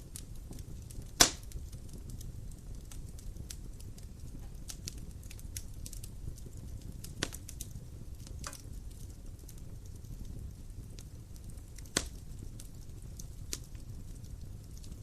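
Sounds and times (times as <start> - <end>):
low rumble of flames: 0.0 - 15.0
wood fire crackling: 0.0 - 15.0.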